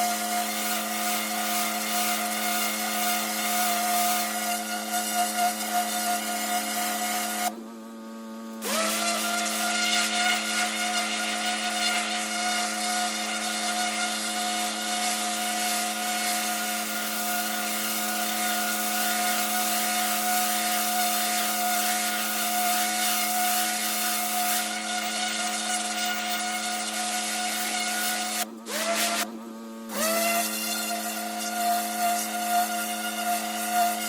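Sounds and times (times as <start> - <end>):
water jet hissing on brick: 0.0 - 5.9, 14.9 - 28.4
pressure washer machine hum: 0.0 - 29.2.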